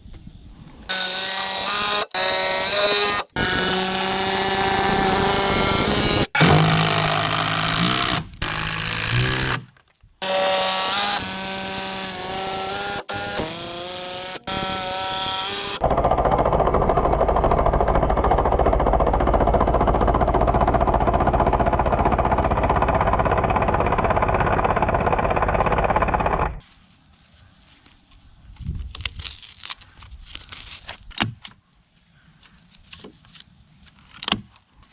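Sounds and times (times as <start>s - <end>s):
power drill motor whine: 0.9s - 9.6s, 10.2s - 15.9s.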